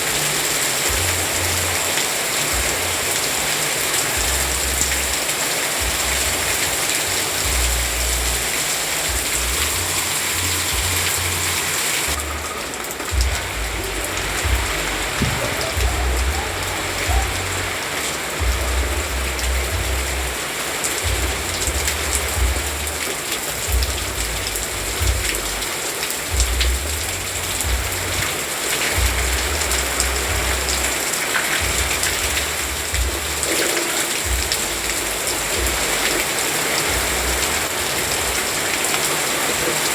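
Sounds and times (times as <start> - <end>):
rain pattering: 0.0 - 39.9
low rumble: 9.2 - 17.8.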